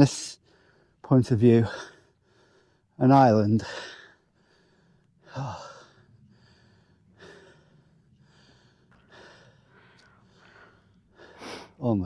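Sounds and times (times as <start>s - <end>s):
person breathing hard: 1.8s - 3.0s, 3.6s - 11.8s.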